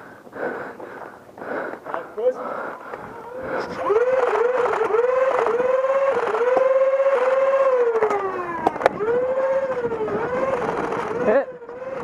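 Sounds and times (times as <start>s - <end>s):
engine revving: 2.4s - 12.0s.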